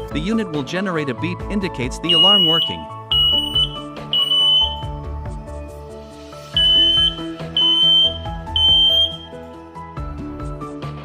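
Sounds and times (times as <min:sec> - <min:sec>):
smoke alarm test beeps: 0:02.0 - 0:05.0, 0:06.5 - 0:09.4.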